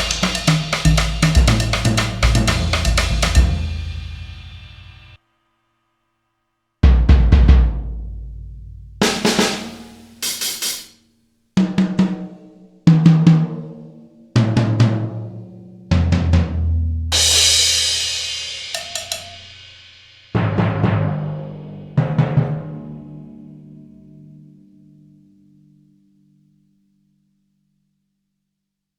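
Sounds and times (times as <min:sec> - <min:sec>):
tom drum hits: 0:00.0 - 0:05.1, 0:06.8 - 0:07.9, 0:09.0 - 0:11.0
cymbal crash: 0:00.0 - 0:05.2, 0:09.0 - 0:11.0.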